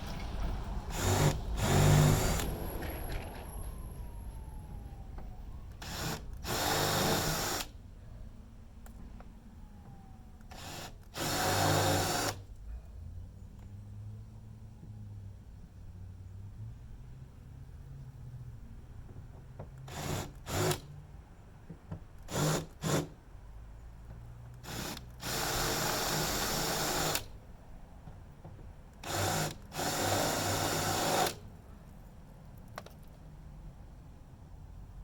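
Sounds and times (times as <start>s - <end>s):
power drill drilling rivets: 0.9s - 3.4s, 5.7s - 7.7s, 10.4s - 12.4s, 19.8s - 20.9s, 22.2s - 23.2s, 24.5s - 27.4s, 29.0s - 31.5s.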